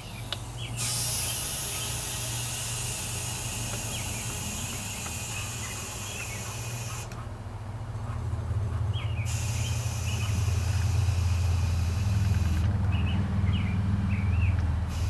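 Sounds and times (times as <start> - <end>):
air hissing: 0.0 - 7.2, 9.2 - 12.6
air compressor motor running: 0.0 - 15.0.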